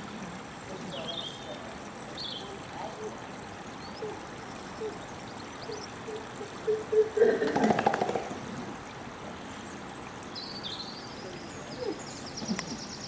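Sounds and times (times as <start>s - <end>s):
stream running: 0.0s - 13.0s.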